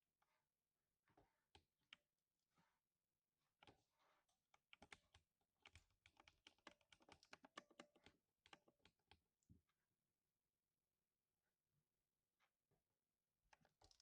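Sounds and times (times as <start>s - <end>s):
mechanical keyboard typing: 5.6s - 8.9s.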